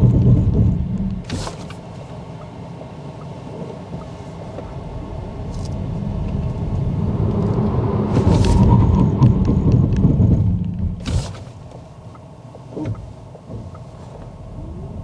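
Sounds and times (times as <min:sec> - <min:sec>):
road and tyre rumble: 0:00.0 - 0:15.0.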